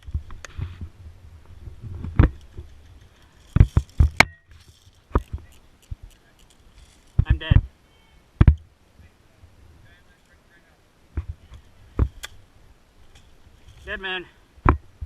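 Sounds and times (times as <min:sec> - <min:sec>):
low rumble of movement: 0:00.0 - 0:07.7.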